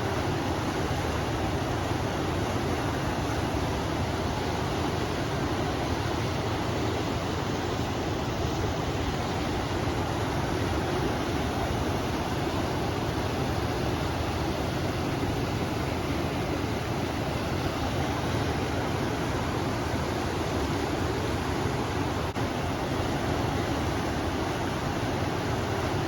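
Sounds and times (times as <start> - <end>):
river rushing: 0.0 - 26.0
wind blowing: 3.1 - 22.9.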